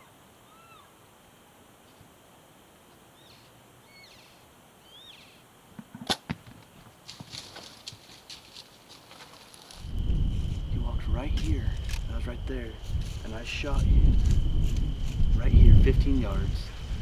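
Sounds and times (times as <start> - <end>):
faint high chirping calls: 0.0 - 1.0, 3.1 - 5.4
hooves crashing through brush: 6.8 - 17.0.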